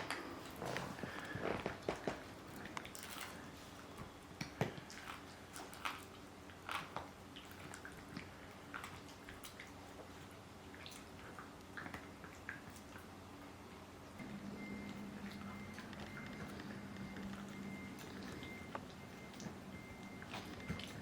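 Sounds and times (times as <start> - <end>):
dog gnawing on a chew: 0.0 - 13.5, 14.8 - 21.0.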